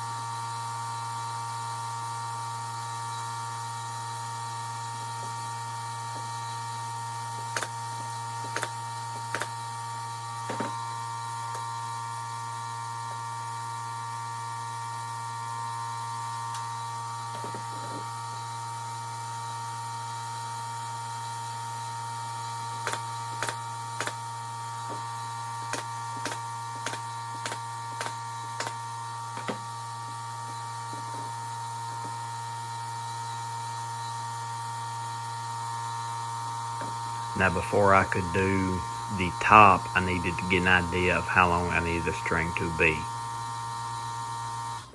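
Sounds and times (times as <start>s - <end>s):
nail gun firing: 22.9s - 24.2s, 25.7s - 28.8s
steady hum: 37.4s - 43.1s.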